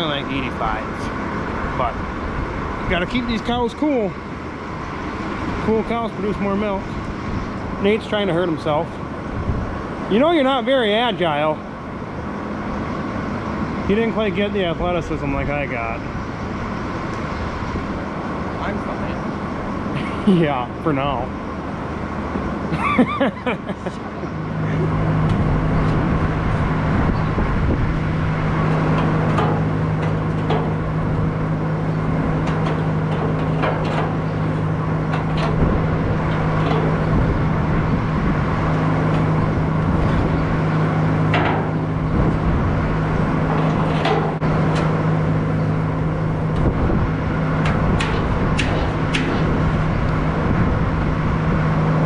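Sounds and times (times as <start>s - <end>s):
skid steer engine running: 0.0s - 52.0s
sharp metal clanks and knocks: 28.7s - 31.2s, 32.0s - 37.3s, 41.2s - 42.0s, 43.4s - 45.0s, 47.6s - 49.8s.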